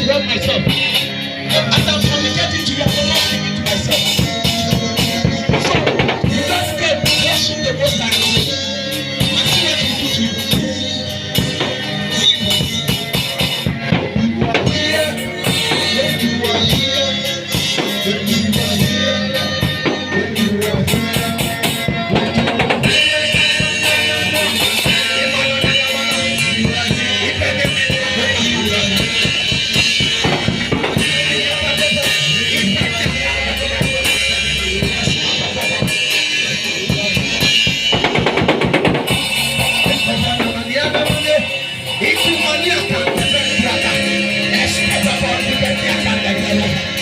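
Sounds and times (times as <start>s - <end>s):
drum kit beat: 0.0s - 47.0s
live band playing: 0.0s - 47.0s
drum roll: 20.6s - 46.8s.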